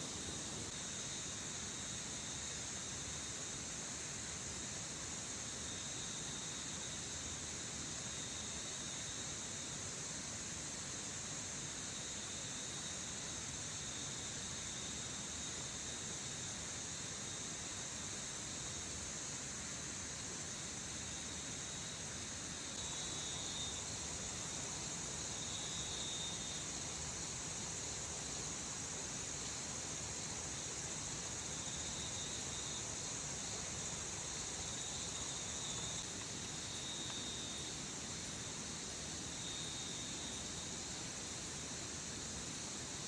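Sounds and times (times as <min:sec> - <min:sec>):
even high hiss: 0:14.0 - 0:43.0.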